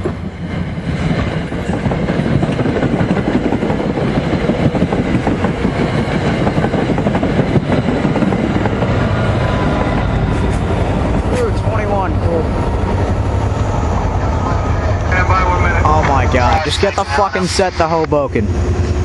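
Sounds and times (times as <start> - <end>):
train wheels clattering on rails: 0.0 - 13.8.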